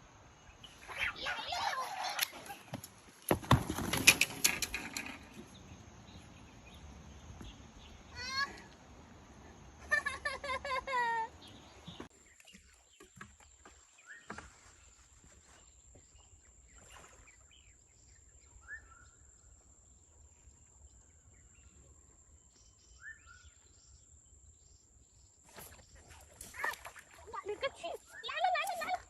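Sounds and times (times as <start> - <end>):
faint bird chirps: 14.0 - 29.0.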